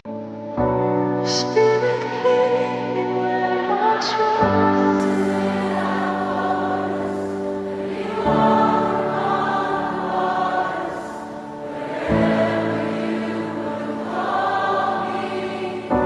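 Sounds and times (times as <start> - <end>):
choir singing sustained chords: 0.0 - 16.0.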